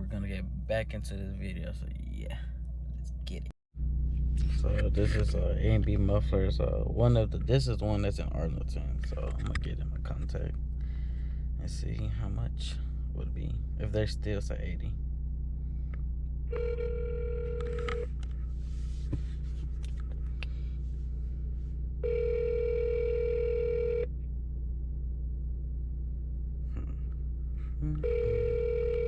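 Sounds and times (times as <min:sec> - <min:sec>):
steady low hum: 0:00.0 - 0:29.0
telephone ringback tone: 0:16.5 - 0:18.1, 0:22.0 - 0:24.1, 0:28.0 - 0:29.0.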